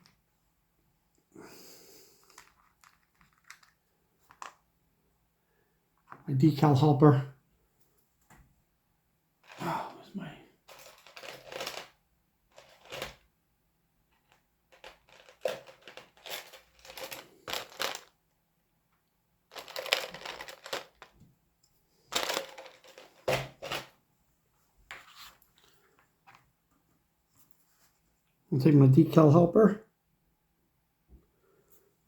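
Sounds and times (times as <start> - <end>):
small objects clattering: 2.2 - 4.7, 9.4 - 9.7, 10.7 - 13.2, 14.2 - 18.2, 19.5 - 21.2, 22.1 - 24.0.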